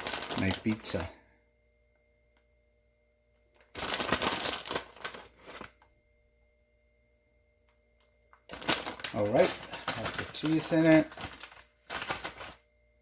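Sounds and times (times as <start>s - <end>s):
plastic bag crinkling: 0.0s - 1.1s, 3.6s - 5.8s, 8.5s - 12.7s.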